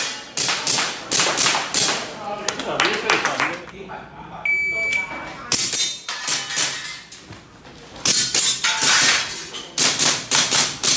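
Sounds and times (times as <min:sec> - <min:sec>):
shot timer beep: 0:04.5 - 0:05.1.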